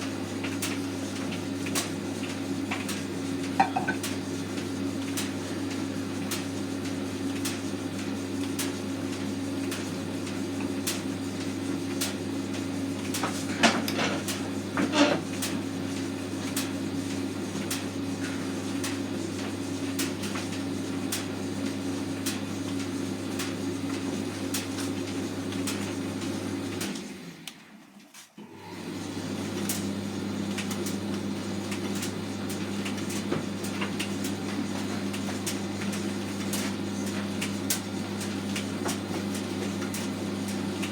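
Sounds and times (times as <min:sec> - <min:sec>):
tumble dryer humming: 0:02.6 - 0:04.7.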